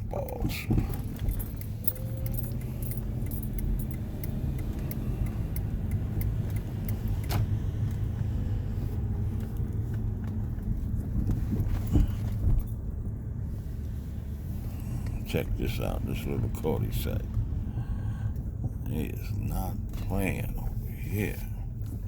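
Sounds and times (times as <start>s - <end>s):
road and engine rumble: 0.0s - 22.0s
light jingling: 0.2s - 4.7s.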